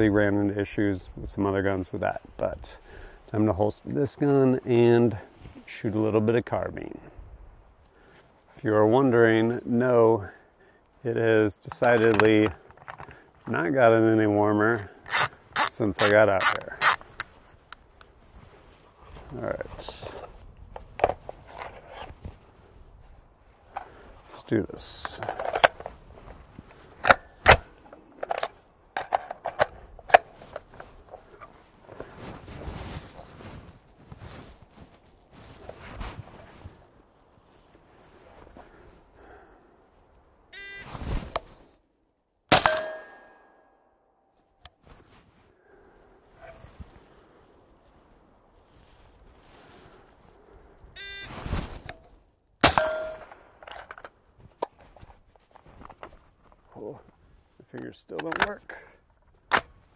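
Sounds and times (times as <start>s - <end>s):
rifle handling clicks: 11.7s - 13.2s, 14.7s - 17.9s, 25.0s - 25.9s, 27.0s - 30.6s, 58.2s - 58.6s
short ringing tone: 40.6s - 40.9s, 51.0s - 51.3s
suppressed rifle shots: 42.5s - 43.3s, 52.6s - 53.5s.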